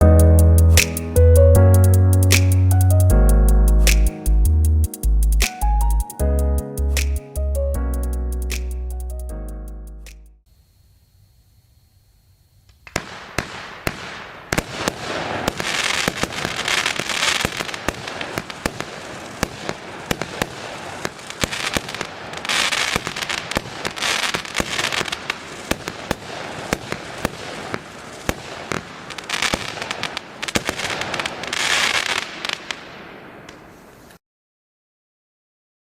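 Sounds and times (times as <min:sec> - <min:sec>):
fireworks bangs and crackling: 0:12.8 - 0:34.0.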